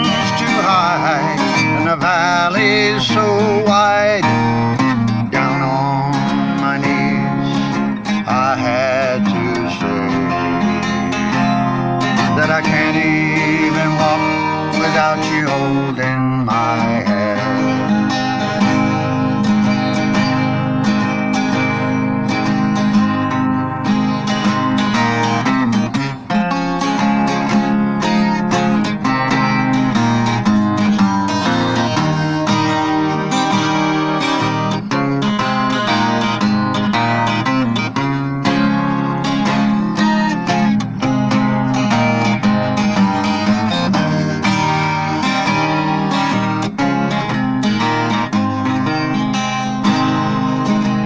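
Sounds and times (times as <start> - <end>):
acoustic guitar strummed and picked: 0.0 - 51.0.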